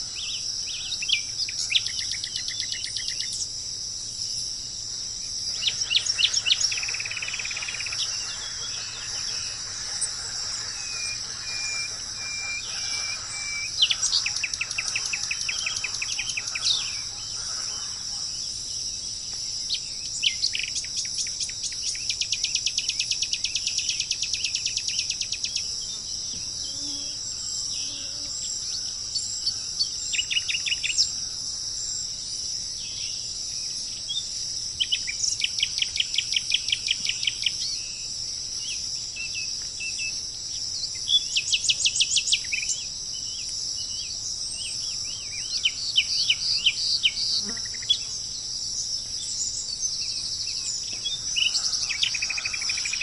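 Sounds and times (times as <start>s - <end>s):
high-pitched insect drone: 0.0s - 34.4s, 35.2s - 53.0s
birds calling: 5.5s - 18.6s.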